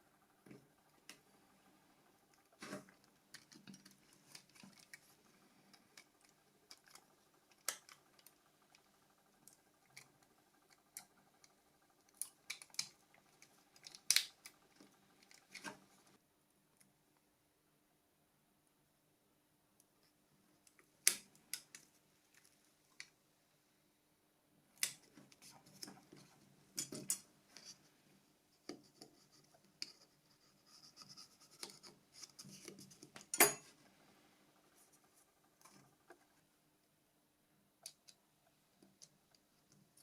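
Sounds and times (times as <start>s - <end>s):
small plastic parts clicking: 2.4s - 16.0s, 20.6s - 23.2s.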